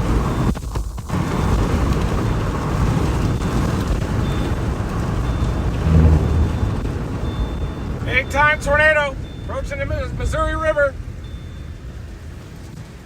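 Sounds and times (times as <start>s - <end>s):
low rumbling noise: 5.5s - 7.6s
low thud: 5.8s - 7.0s.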